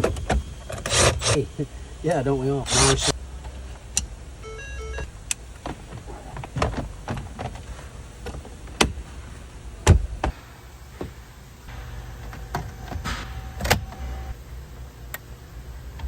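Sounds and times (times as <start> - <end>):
low steady hum: 0.0 - 16.0.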